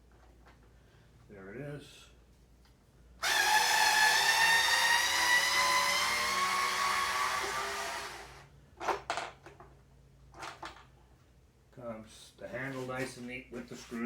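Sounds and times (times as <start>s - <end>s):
cordless drill motor whine: 3.2s - 8.4s.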